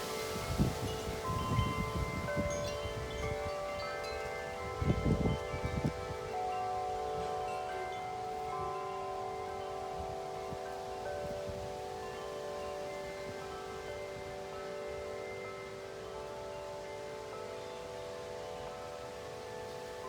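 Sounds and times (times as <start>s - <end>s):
wind gusts buffeting microphone: 0.0s - 7.7s
wind chimes ringing: 0.0s - 20.0s.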